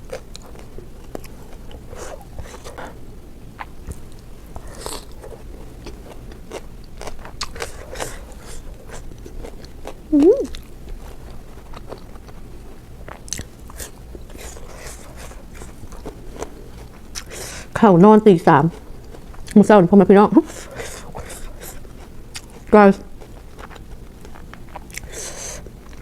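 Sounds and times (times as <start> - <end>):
crunching and chewing food: 0.0 - 26.0
person humming: 10.1 - 10.6.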